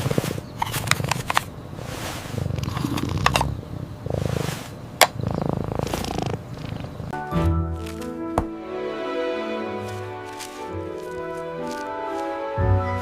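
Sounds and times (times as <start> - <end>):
soft rustling: 0.0 - 3.0, 4.1 - 4.8, 5.8 - 7.0, 9.8 - 12.5.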